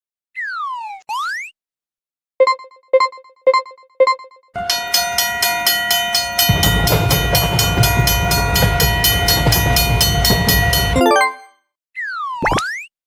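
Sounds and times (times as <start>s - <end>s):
railroad crossing alarm ringing: 2.4s - 11.5s
train rumbling past: 4.6s - 11.3s
falling run of tones: 4.6s - 11.5s.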